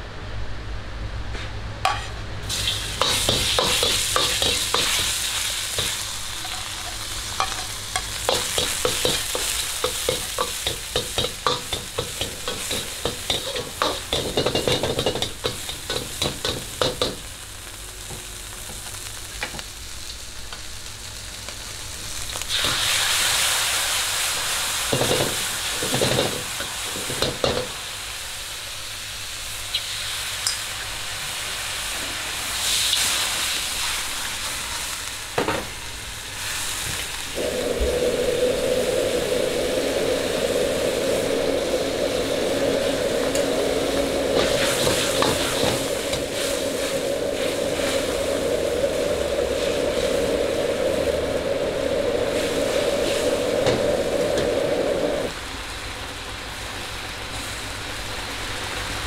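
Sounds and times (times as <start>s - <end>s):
food sizzling in a pan: 1.9s - 59.0s
spatula scraping a pan: 7.4s - 17.1s
steady low hum: 37.2s - 58.6s.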